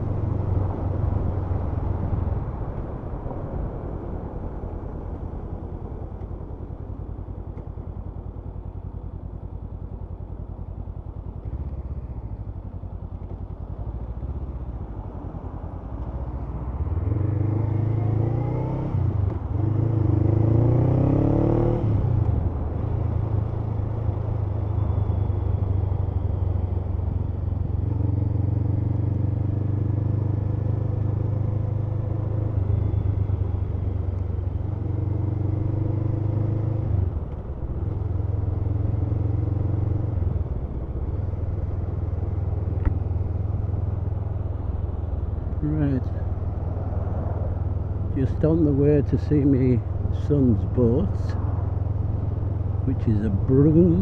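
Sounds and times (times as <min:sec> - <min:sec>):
motorcycle engine revving: 0:16.8 - 0:25.7, 0:26.3 - 0:36.9, 0:48.1 - 0:54.0.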